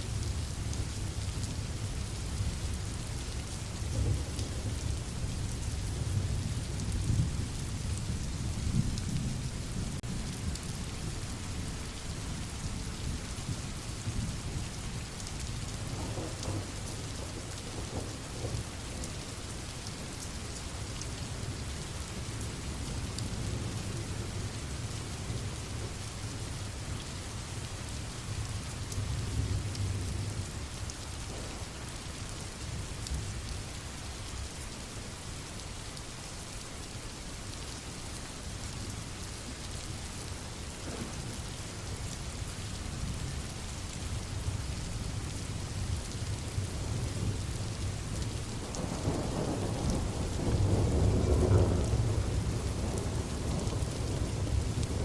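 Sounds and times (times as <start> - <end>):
steady rain patter: 0.0 - 55.0
low thunder rumbling: 15.7 - 19.2, 31.3 - 31.9, 48.1 - 55.0.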